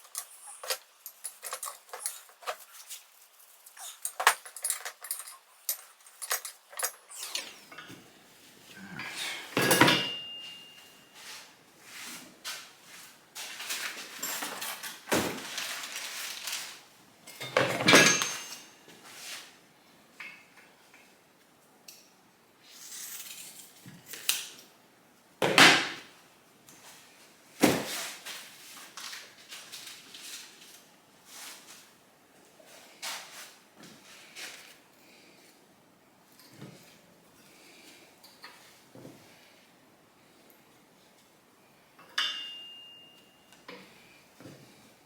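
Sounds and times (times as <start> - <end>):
metal tools clinking: 0.0 - 8.0, 9.0 - 11.1, 14.1 - 14.9, 17.3 - 18.8.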